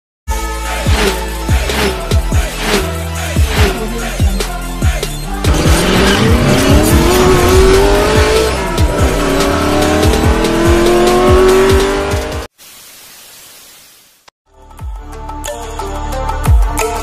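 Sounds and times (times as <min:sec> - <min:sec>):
music with heavy deep beat: 0:00.4 - 0:12.5
motorcycle engine revving hard: 0:05.5 - 0:12.5.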